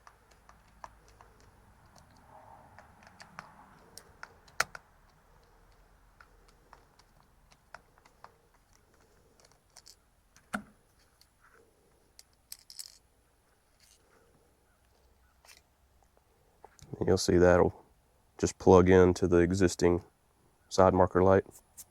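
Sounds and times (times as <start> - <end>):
screwdriver clicking on plastic: 0.0 - 2.2, 2.8 - 10.7.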